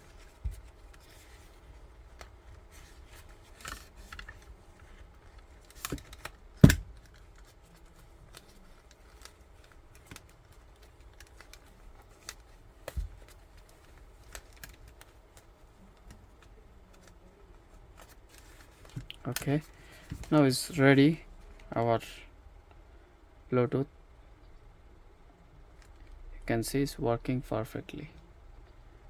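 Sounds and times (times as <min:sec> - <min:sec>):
plastic parts clicking and rubbing: 0:00.0 - 0:20.4.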